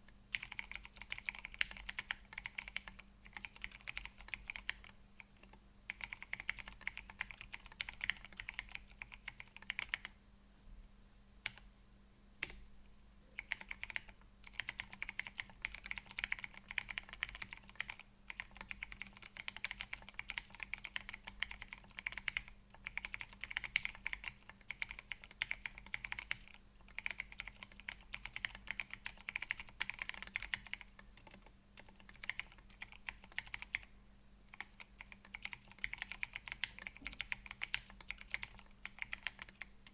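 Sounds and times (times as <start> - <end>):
mechanical keyboard typing: 0.3 - 10.2, 13.4 - 33.9, 34.5 - 39.9.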